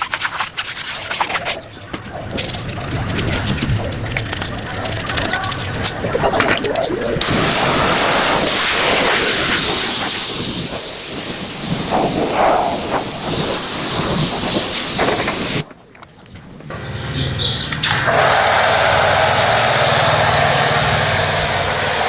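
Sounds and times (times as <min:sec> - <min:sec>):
pressure washer spraying: 0:07.2 - 0:15.6, 0:17.8 - 0:22.0.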